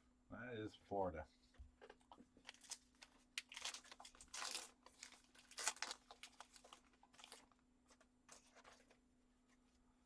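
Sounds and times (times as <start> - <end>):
foil wrapper crinkling and tearing: 2.4 - 7.6.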